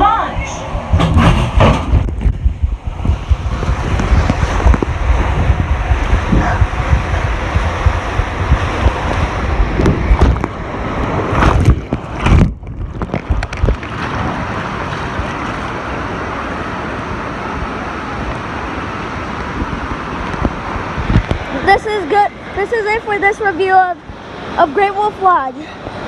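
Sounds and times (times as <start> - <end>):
rushing water: 0.0 - 26.0
wind buffeting microphone: 0.0 - 26.0
rough knocks: 0.9 - 5.0.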